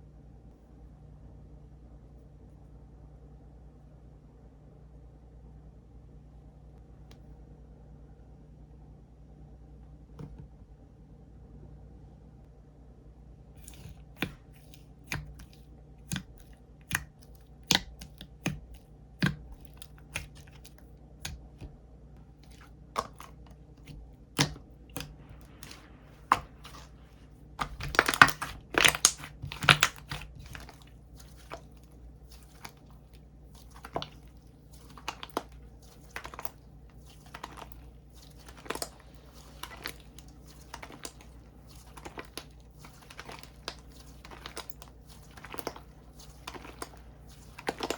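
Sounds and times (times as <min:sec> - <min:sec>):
slime popping and clicking: 0:27.6 - 0:31.6.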